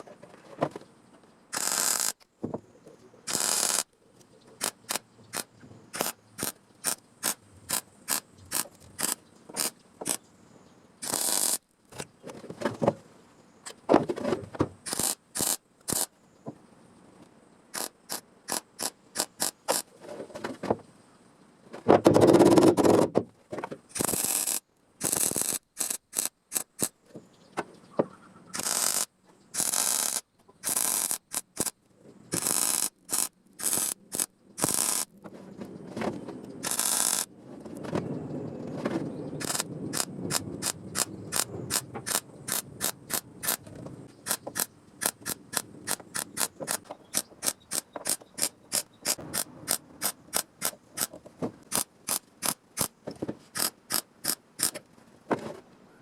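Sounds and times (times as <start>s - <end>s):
ratchet rasping strokes: 1.5s - 2.2s, 3.3s - 3.9s, 4.6s - 10.2s, 11.0s - 11.6s, 14.8s - 16.1s, 17.8s - 19.9s, 23.9s - 26.9s, 28.5s - 35.1s, 36.6s - 37.3s, 39.4s - 43.6s, 44.2s - 52.9s, 53.5s - 54.8s
ratchet clicks: 1.5s - 2.3s, 3.3s - 3.9s, 4.6s - 10.2s, 11.0s - 11.6s, 14.8s - 16.1s, 17.8s - 19.9s, 23.9s - 26.9s, 28.5s - 35.1s, 36.6s - 37.3s, 39.4s - 43.6s, 44.2s - 52.9s, 53.6s - 54.8s.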